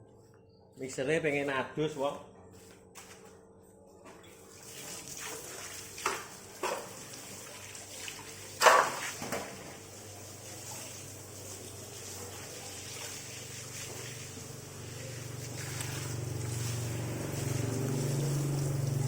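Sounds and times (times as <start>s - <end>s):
water running and splashing: 4.5s - 19.0s.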